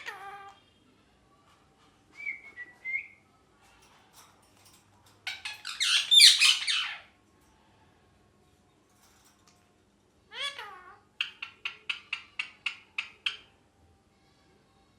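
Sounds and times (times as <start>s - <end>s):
parrot screeching calls: 0.0s - 0.6s, 5.2s - 7.1s, 10.3s - 13.5s.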